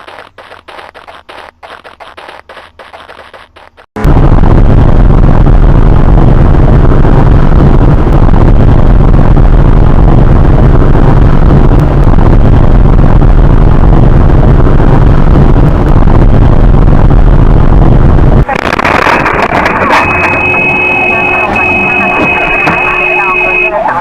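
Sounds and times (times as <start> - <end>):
vehicle engine rumbling: 0.0 - 24.0.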